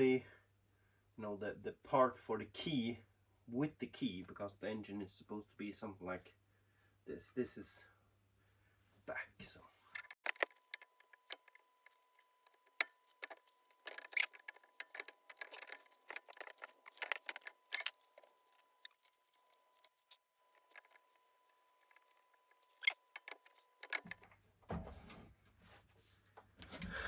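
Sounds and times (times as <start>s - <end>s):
small metal parts clinking: 9.9s - 24.2s.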